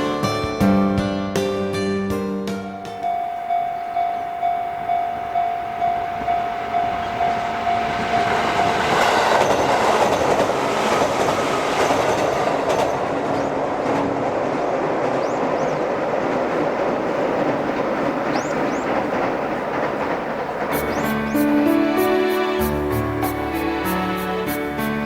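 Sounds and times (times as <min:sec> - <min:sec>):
level-crossing alarm bell ringing: 0:02.8 - 0:10.4
train wheels clattering on rails: 0:02.8 - 0:24.6.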